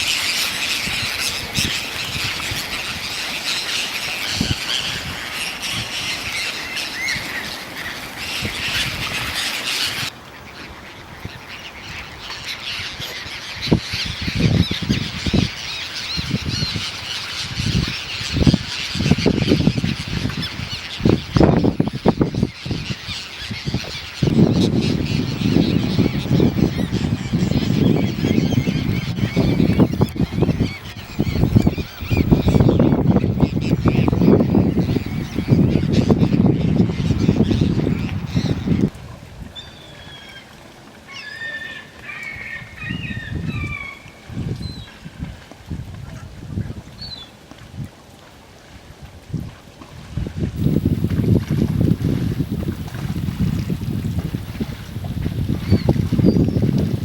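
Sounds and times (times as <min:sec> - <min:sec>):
waterbirds squawking and honking: 0:00.0 - 0:38.9, 0:39.6 - 0:44.9, 0:50.6 - 0:57.0.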